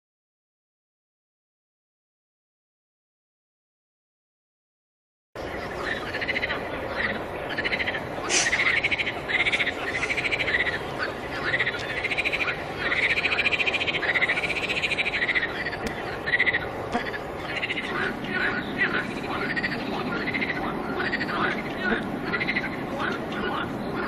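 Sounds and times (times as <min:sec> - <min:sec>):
steady hiss: 0:05.5 - 0:20.8
pulsed animal calls: 0:05.7 - 0:24.0.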